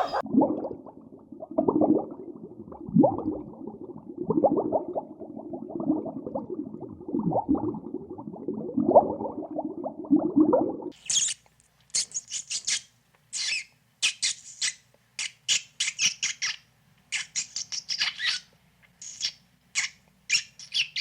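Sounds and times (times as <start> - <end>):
animal giving short low calls: 0.0 - 0.2.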